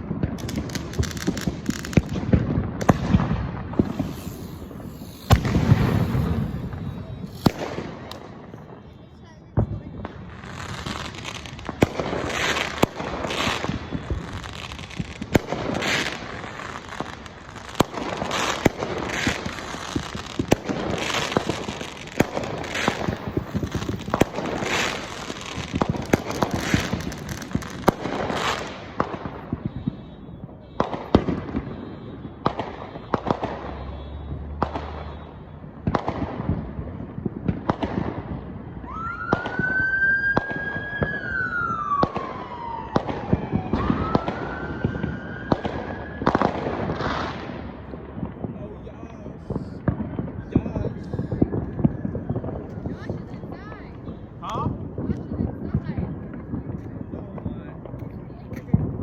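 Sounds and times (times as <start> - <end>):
fireworks crackling and popping: 0.0 - 59.0
siren: 3.6 - 8.8, 20.9 - 35.7, 38.8 - 47.0.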